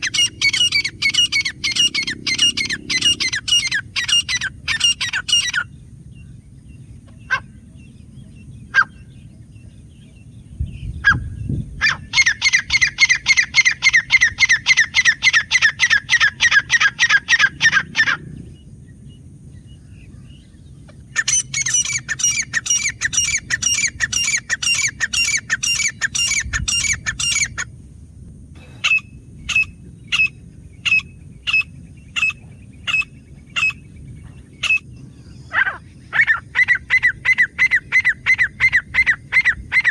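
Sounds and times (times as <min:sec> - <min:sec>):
francolin calling: 0:00.0 - 0:27.7, 0:28.6 - 0:39.9.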